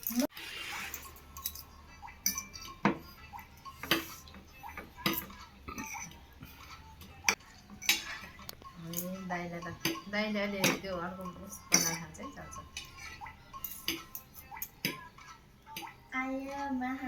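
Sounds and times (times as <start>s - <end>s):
cutlery clinking on plates: 1.0s - 3.1s, 3.8s - 9.1s, 11.7s - 12.2s, 12.8s - 15.1s.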